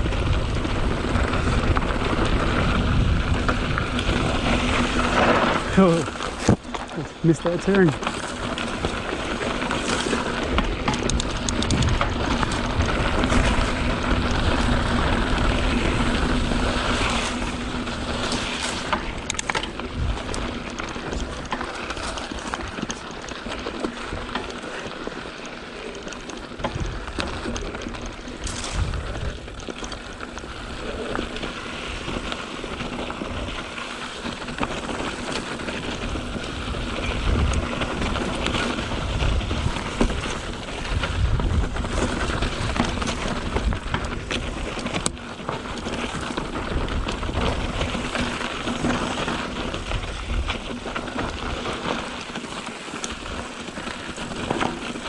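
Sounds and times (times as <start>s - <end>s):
wind rushing over microphone: 0.0s - 8.0s, 28.4s - 29.6s, 35.9s - 45.1s
bike clicks and knocks: 0.0s - 55.0s
bike tyres rolling over dirt: 0.0s - 55.0s.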